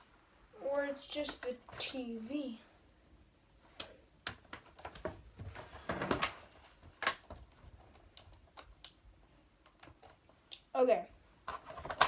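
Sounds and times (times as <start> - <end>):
small clicks and knocks: 3.7 - 9.0.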